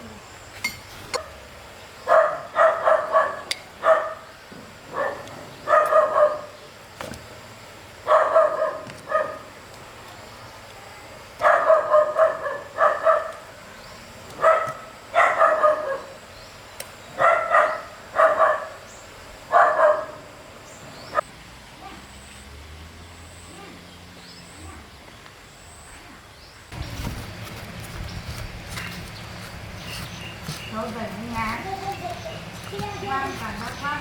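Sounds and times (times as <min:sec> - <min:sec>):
dog barking: 0:02.1 - 0:04.3, 0:04.9 - 0:06.6, 0:08.0 - 0:09.5, 0:11.4 - 0:13.5, 0:14.4 - 0:16.2, 0:17.2 - 0:18.8, 0:19.5 - 0:20.3, 0:21.8 - 0:22.1.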